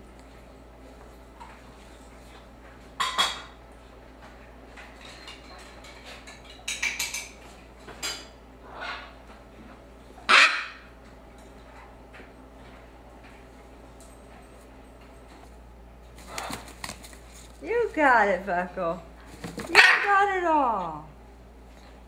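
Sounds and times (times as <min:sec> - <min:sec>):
parrot chick harsh calls: 0:10.3 - 0:10.9.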